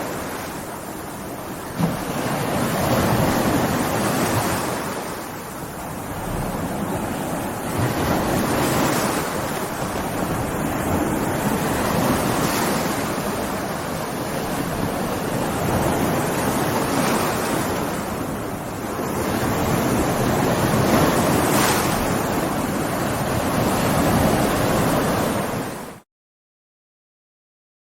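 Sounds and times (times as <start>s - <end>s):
heavy surf and breaking waves: 0.0s - 26.0s
wind: 0.0s - 26.1s.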